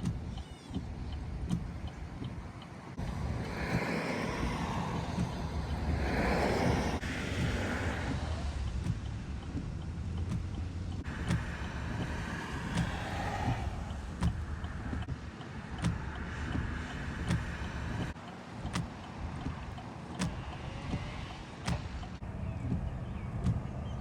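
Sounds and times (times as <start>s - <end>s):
car cabin rumble: 0.0s - 24.0s.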